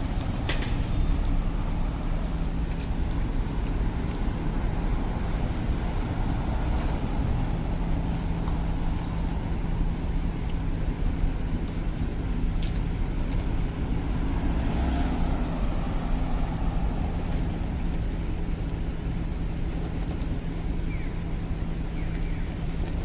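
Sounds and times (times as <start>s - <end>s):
vehicle passing: 0.0s - 9.9s, 13.7s - 18.3s
city street traffic rumble: 0.0s - 23.0s.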